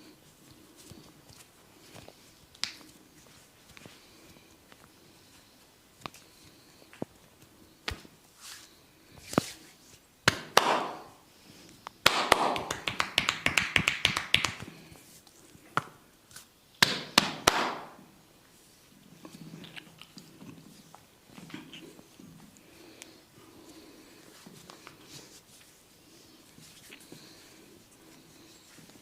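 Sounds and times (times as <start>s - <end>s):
slaps and taps on scalp: 2.6s - 2.8s, 10.2s - 11.1s, 12.0s - 14.7s, 16.8s - 17.9s
hands rubbing head: 12.2s - 15.3s.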